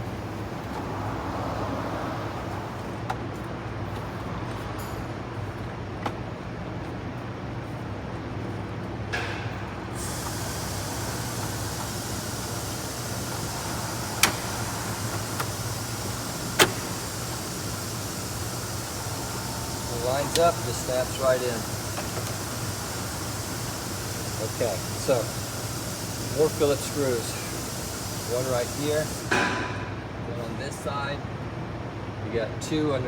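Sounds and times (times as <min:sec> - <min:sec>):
steady low hum: 0:10.0 - 0:29.3.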